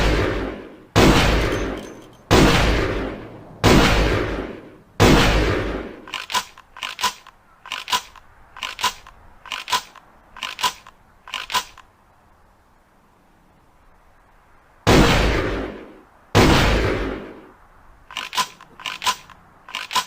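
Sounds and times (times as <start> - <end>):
loud shotgun shot: 0.0 - 6.0, 14.9 - 17.4
shotgun action clicking: 6.1 - 11.9, 18.1 - 20.0.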